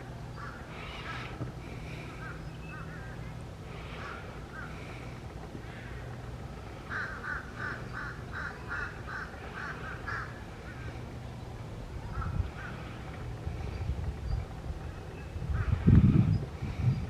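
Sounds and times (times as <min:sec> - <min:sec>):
low steady rumble: 0:00.0 - 0:17.0
bird harsh calls: 0:00.2 - 0:11.4.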